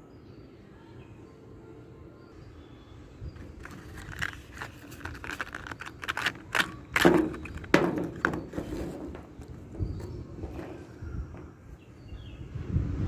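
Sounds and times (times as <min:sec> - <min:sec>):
objects being handled: 0:03.4 - 0:11.5
loud knocks: 0:07.0 - 0:10.1.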